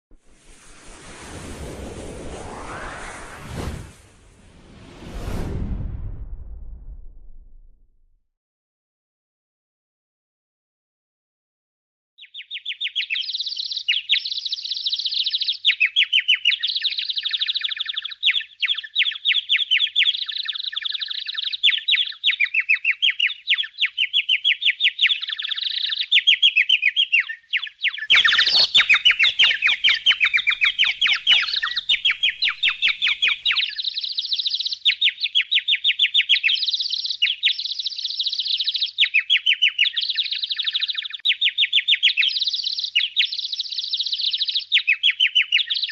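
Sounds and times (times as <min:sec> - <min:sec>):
budgerigars twittering: 0:27.2 - 0:45.7.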